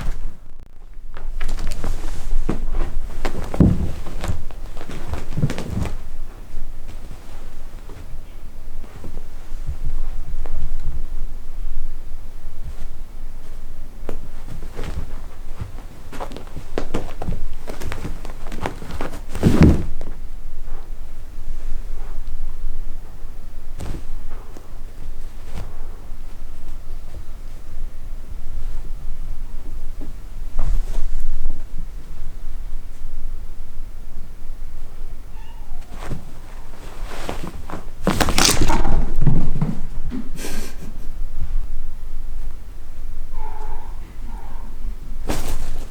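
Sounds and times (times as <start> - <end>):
cats scuffling: 0.0 - 33.4, 34.7 - 42.6, 44.7 - 45.9
cat paws running and landing: 1.1 - 8.2, 12.6 - 20.2, 35.8 - 40.9, 45.2 - 45.9
cat meowing: 35.0 - 36.2.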